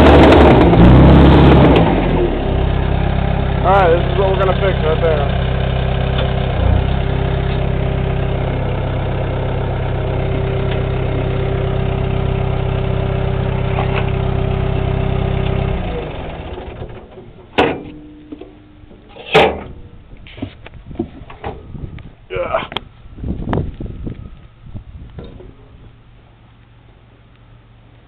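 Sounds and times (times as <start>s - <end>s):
bulldozer diesel engine idling: 0.9s - 19.1s.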